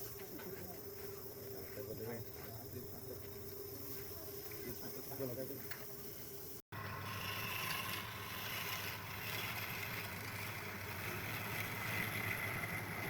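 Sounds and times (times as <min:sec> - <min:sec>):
power tool running: 0:06.7 - 0:13.0.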